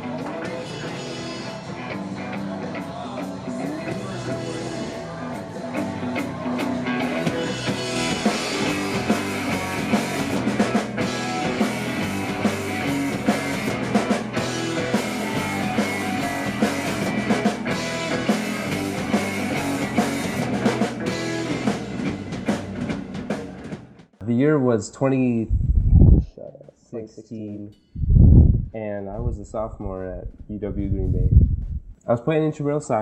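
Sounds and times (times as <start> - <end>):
drum kit beating: 0.0 - 24.0
rock guitar: 0.0 - 24.0.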